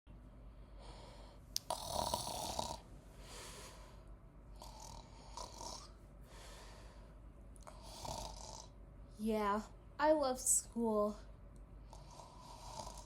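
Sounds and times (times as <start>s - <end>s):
person snoring: 1.6s - 2.8s, 4.6s - 5.9s, 7.6s - 8.8s, 11.9s - 13.0s.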